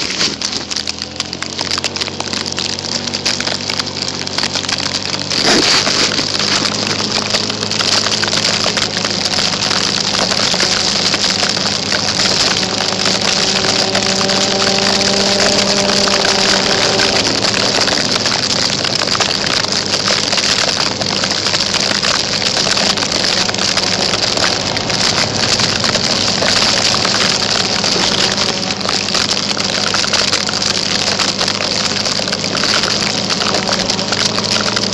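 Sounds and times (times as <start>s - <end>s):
scooter engine hum: 0.0s - 34.9s
wet snow pelting tape: 0.0s - 34.9s.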